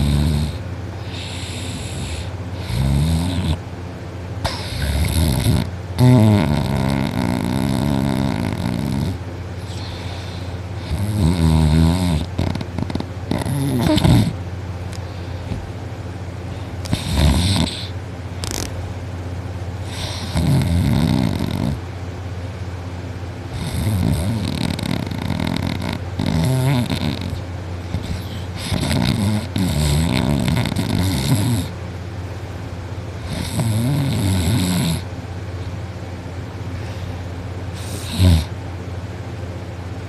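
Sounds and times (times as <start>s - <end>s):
person snoring heavily: 0.0s - 3.6s, 4.4s - 14.4s, 16.6s - 18.7s, 19.8s - 21.8s, 23.5s - 31.8s, 33.2s - 35.1s, 37.8s - 38.6s.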